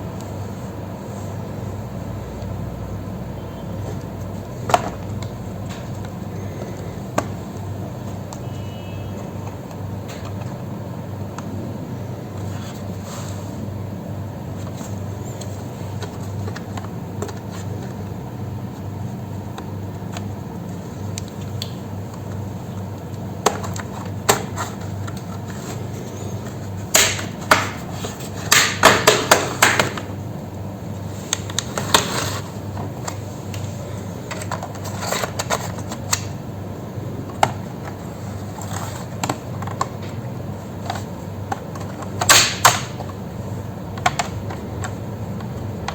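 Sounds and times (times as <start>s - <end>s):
steady low hum: 0.0s - 45.9s
plastic clicks and clacks: 43.9s - 45.9s.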